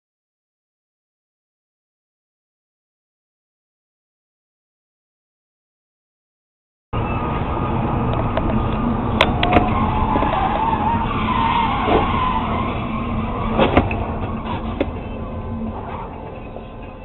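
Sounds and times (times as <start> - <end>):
car tyres squealing: 7.0 - 17.0
road rumble: 7.0 - 17.0.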